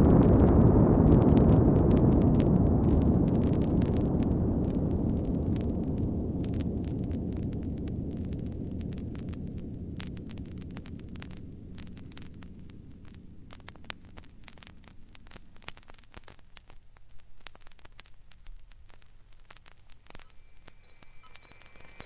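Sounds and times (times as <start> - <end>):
low electronic spaceship rumble: 0.0 - 14.2
vinyl surface crackle: 0.0 - 22.0
faint high tone: 20.2 - 22.0.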